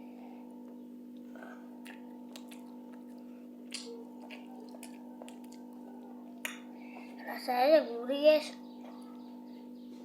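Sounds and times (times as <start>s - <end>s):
steady background hum: 0.0s - 10.0s
person eating with soft clicks: 1.1s - 5.8s.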